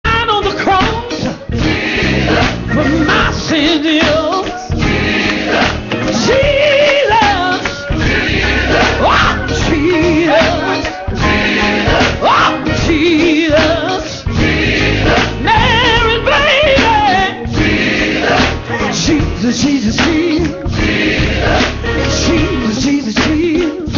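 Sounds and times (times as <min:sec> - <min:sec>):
instrumental accompaniment: 0:00.1 - 0:23.9
choir singing gospel: 0:00.3 - 0:23.9.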